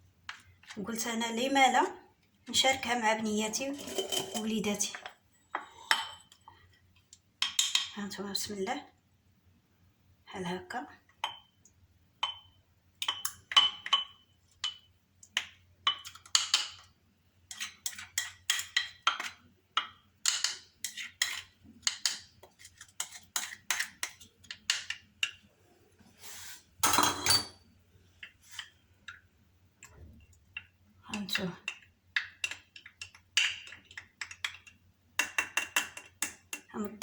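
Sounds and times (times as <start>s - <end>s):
spoon clinking on glass: 26.8s - 27.6s.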